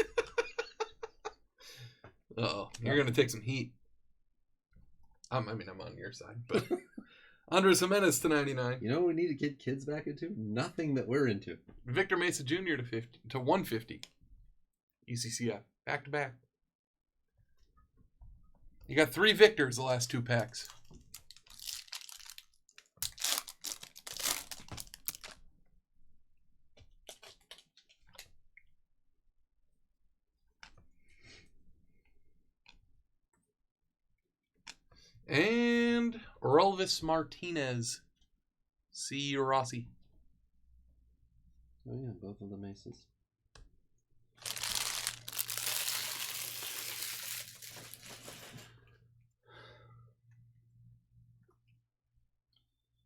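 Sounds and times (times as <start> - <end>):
wrapper crinkling and tearing: 20.4 - 25.4, 44.4 - 48.7.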